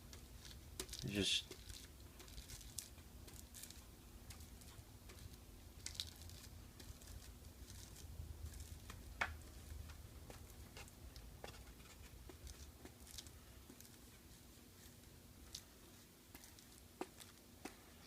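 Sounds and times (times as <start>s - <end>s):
small clicks of hands working film: 0.0s - 14.0s.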